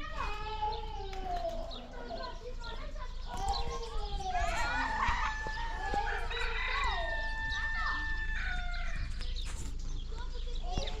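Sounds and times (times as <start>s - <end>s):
rooster crowing: 4.4s - 9.0s.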